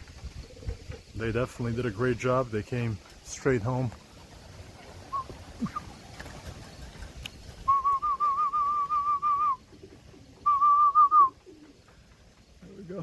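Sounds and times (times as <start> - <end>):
person whistling trilled tone: 7.7 - 9.6, 10.4 - 11.4.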